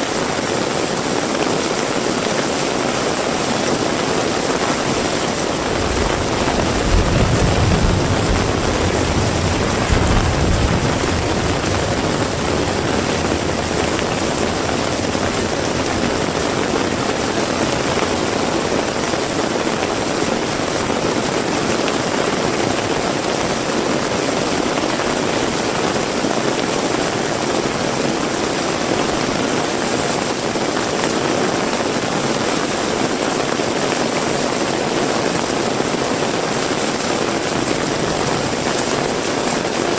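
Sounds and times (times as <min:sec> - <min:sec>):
heavy rain falling: 0:00.0 - 0:39.9
low rumble: 0:04.7 - 0:20.2.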